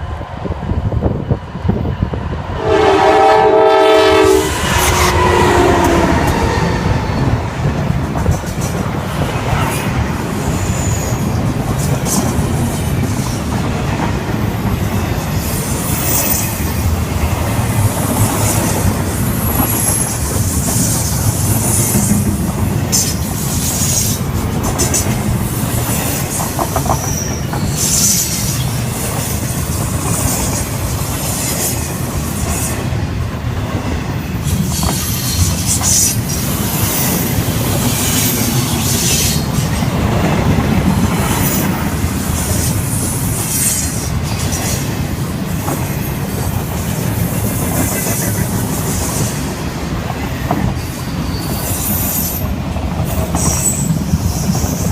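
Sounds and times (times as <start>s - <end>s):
freight train rumble and clatter: 0.0s - 54.9s
wheel squeal: 26.8s - 28.7s, 50.8s - 52.5s, 53.3s - 54.9s.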